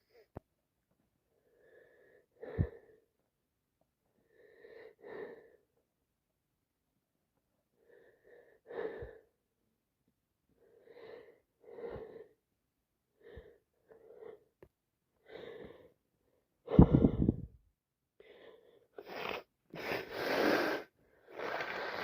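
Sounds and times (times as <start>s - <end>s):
congested nose breathing: 18.5s - 22.0s.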